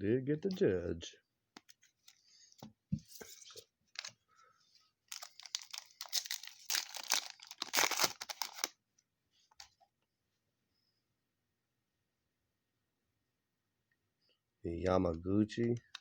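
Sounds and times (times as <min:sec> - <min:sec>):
foil wrapper crinkling and tearing: 0:05.1 - 0:08.7.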